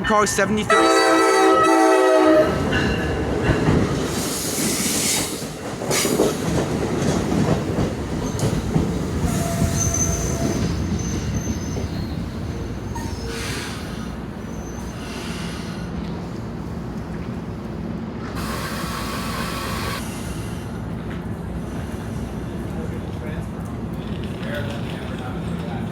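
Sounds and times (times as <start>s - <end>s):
train rumble: 0.0s - 25.9s
train wheels squealing on rails: 8.2s - 16.0s, 18.4s - 20.8s.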